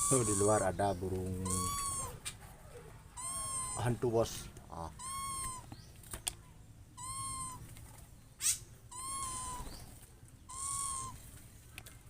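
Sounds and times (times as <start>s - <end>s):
owl calling: 0.0s - 5.9s, 7.0s - 7.7s, 8.4s - 11.2s.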